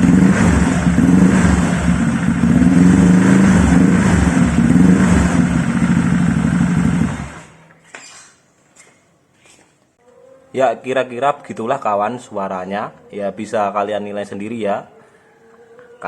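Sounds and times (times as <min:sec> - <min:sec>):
motorcycle engine exhaust note: 0:00.0 - 0:07.6.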